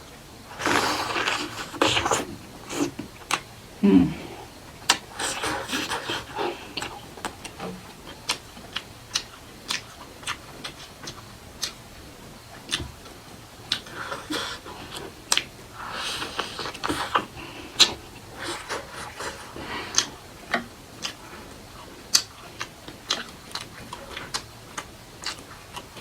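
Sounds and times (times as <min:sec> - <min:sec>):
breathy hiss: 0:00.4 - 0:07.2, 0:13.7 - 0:22.0
wet chewing and lip smacks: 0:00.6 - 0:03.5, 0:04.8 - 0:11.9, 0:12.5 - 0:26.0.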